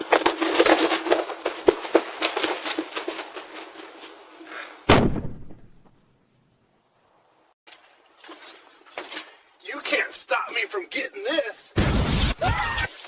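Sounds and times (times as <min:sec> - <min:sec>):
dense crackling pops: 0:00.0 - 0:06.2
loud bang: 0:04.9 - 0:05.9.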